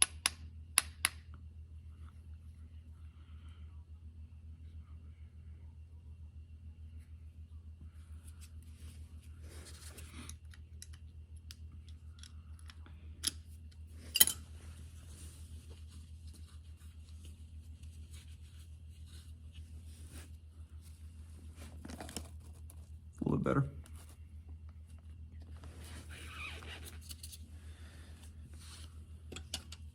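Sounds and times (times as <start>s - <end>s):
steady low hum: 0.0s - 29.9s
metal tools clinking and scraping: 14.1s - 14.5s.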